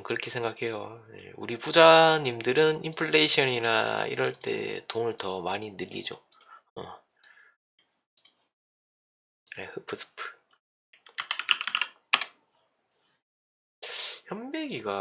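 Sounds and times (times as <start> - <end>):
computer keyboard typing: 11.1 - 12.4.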